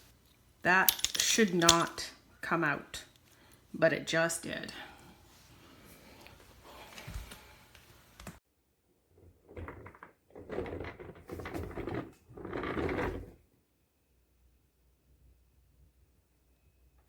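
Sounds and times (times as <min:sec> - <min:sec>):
chair casters scraping and knocking: 0:09.2 - 0:13.4.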